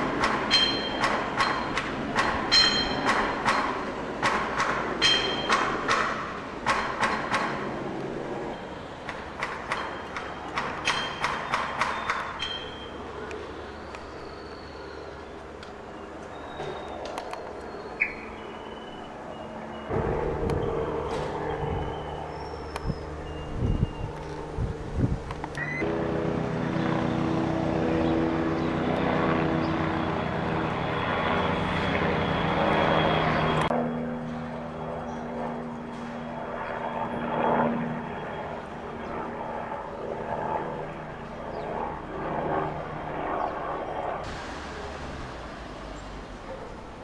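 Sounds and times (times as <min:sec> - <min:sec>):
engine running: 0:15.0 - 0:47.0.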